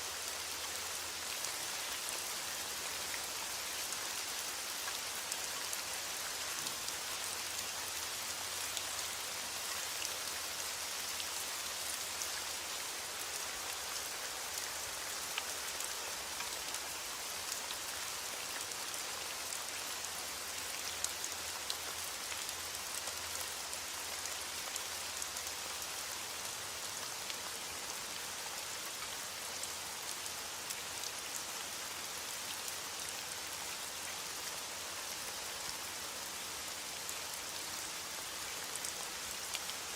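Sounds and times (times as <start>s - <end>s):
steady rain hiss: 0.0s - 39.9s
raindrops pattering on surface: 0.2s - 25.7s.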